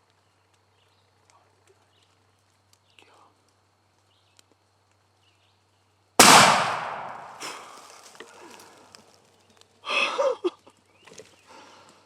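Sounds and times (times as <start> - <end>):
shotgun shot: 6.2 - 7.6.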